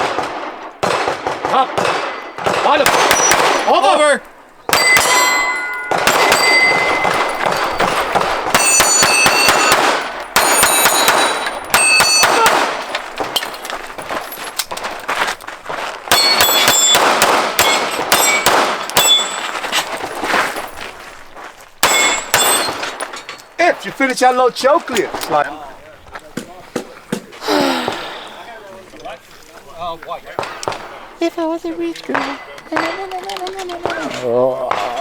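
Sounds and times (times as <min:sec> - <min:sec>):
pistol shots: 0:00.0 - 0:13.5, 0:16.1 - 0:19.4, 0:21.8 - 0:23.2, 0:30.4 - 0:31.2
steel targets clanging: 0:01.9 - 0:14.8, 0:16.1 - 0:20.8, 0:21.8 - 0:25.5, 0:32.0 - 0:35.0.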